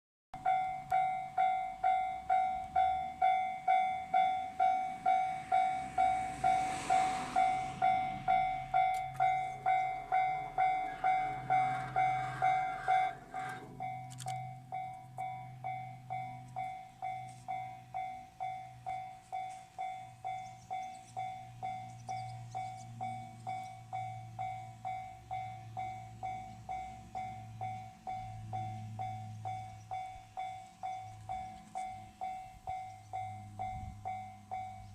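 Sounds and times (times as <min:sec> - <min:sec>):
level-crossing warning bell: 0:00.4 - 0:34.9
low rumble: 0:02.4 - 0:16.7.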